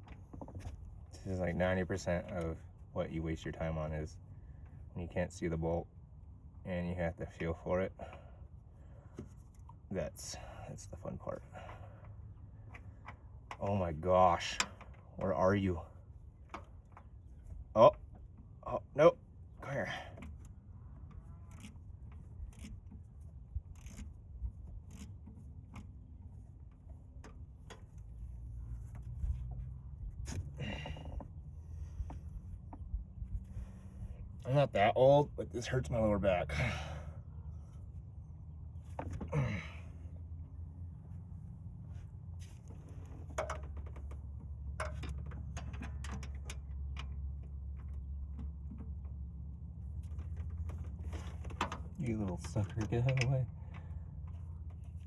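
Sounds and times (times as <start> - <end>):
hand ratchet clicking: 22.5 - 22.8, 23.8 - 24.2.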